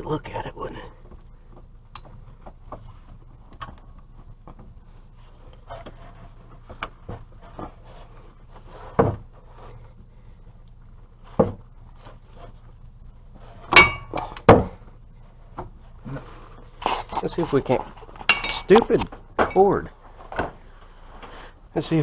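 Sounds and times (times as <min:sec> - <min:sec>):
loud metallic clanks: 0:13.8 - 0:14.2, 0:18.3 - 0:18.8
hand tools clinking on metal: 0:13.8 - 0:14.3, 0:18.3 - 0:19.9.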